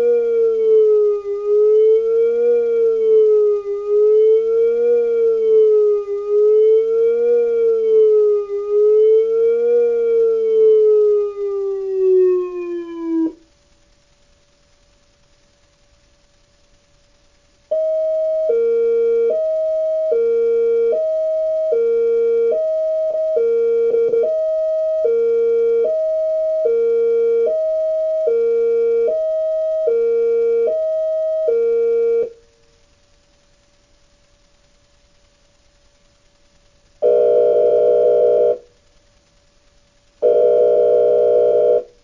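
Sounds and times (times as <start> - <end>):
electronic siren hi-lo tone: 0.0 - 13.5, 17.7 - 32.7, 37.0 - 38.7, 40.2 - 42.0.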